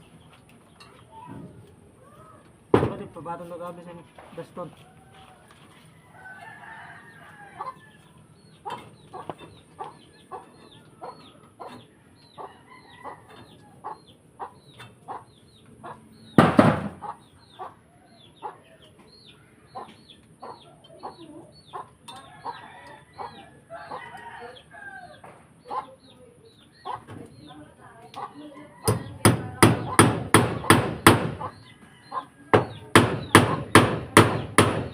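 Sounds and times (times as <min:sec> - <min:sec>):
loud knock: 0:02.7 - 0:03.0, 0:16.4 - 0:17.0
chickens clucking: 0:04.2 - 0:33.8.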